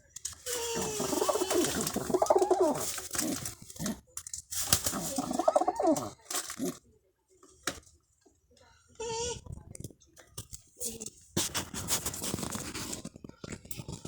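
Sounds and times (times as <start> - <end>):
pigeon cooing: 0.5 - 3.6, 4.8 - 6.8.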